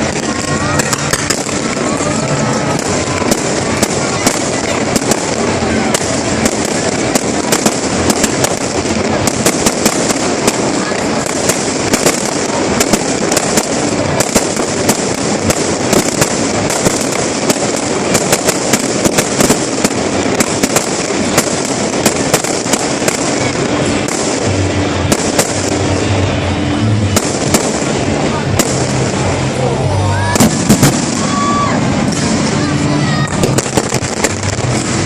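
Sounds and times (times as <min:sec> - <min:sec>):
fireworks crackling and popping: 0:00.0 - 0:35.0
low music tones: 0:21.1 - 0:35.0.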